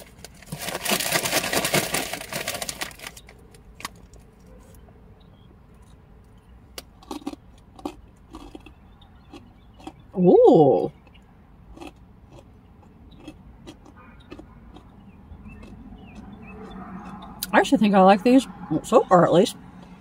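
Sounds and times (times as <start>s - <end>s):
plastic bag rustling: 0.0s - 4.2s.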